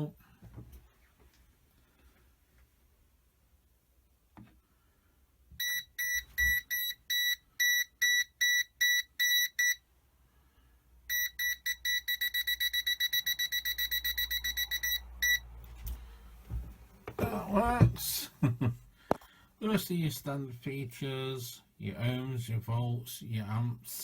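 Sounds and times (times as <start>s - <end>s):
multimeter high beeps: 5.6s - 9.8s, 11.1s - 15.5s.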